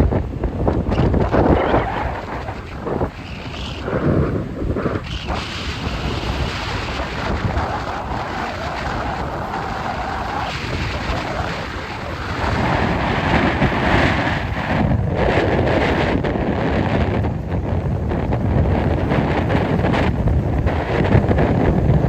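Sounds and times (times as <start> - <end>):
waves breaking: 0.0 - 16.2
wind buffeting microphone: 0.0 - 22.0.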